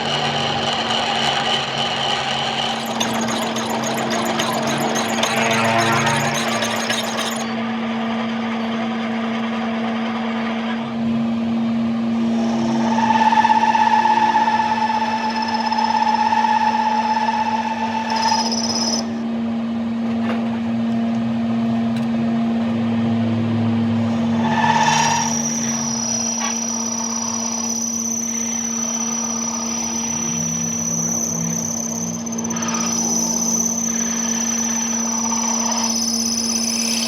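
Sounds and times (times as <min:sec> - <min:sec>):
machine motor humming: 0:00.0 - 0:07.5
high whine: 0:00.0 - 0:07.7.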